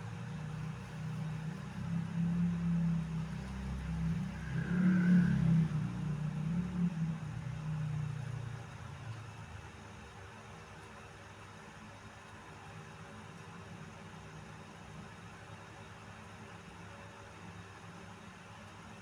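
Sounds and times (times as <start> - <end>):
motorcycle engine revving: 1.6 - 7.4.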